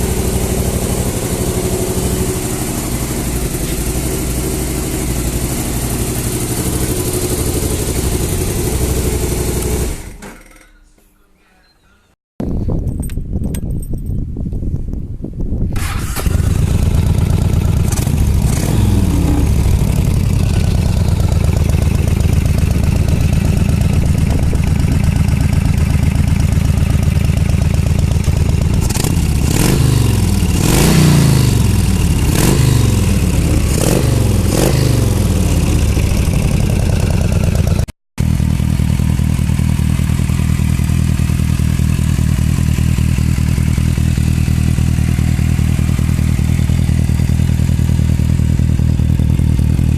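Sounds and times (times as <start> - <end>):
motorcycle engine revving and idling: 0.0 - 10.6, 15.7 - 49.9.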